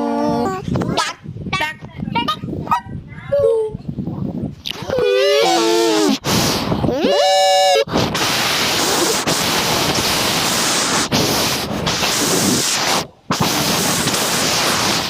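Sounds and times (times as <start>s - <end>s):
loud static rushing noise: 5.8s - 15.0s.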